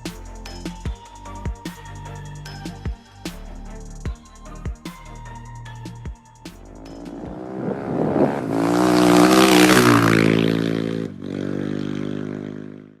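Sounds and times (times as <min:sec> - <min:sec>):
motorcycle engine revving: 0:06.8 - 0:13.0.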